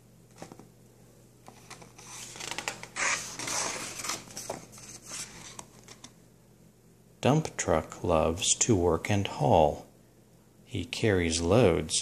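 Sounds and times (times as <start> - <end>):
paper pages rustling and turning: 0.3 - 0.6, 1.4 - 6.2.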